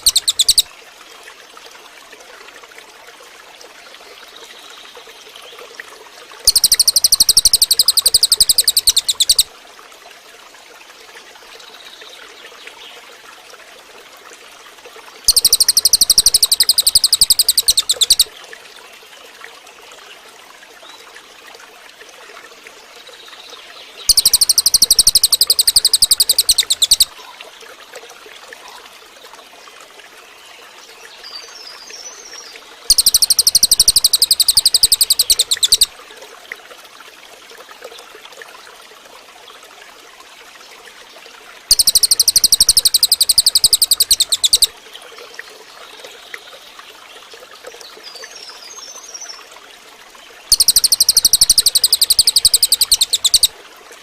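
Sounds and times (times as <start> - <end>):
bird rattling trills: 0.0 - 0.7, 6.5 - 9.5, 15.3 - 18.3, 24.1 - 27.1, 32.9 - 35.9, 41.7 - 44.7, 50.5 - 53.5
soft bird chirps: 0.0 - 0.7, 6.5 - 9.5, 15.3 - 18.3, 24.0 - 27.3, 31.1 - 35.9, 41.7 - 44.7, 50.5 - 53.5.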